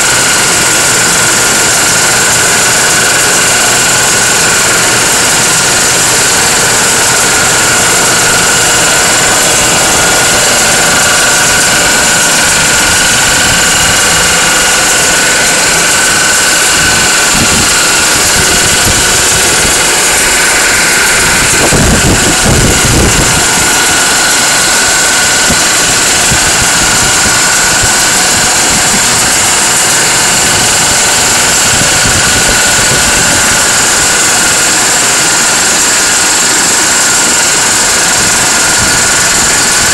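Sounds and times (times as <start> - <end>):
air compressor hissing and whining: 0.0 - 39.9
low rumble: 6.9 - 29.5.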